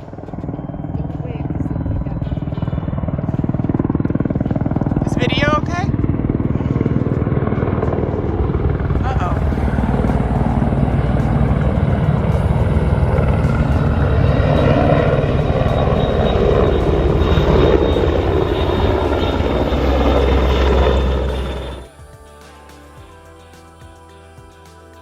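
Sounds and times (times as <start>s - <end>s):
helicopter rotor and engine noise: 0.0s - 22.9s
thin high whine: 6.6s - 25.0s.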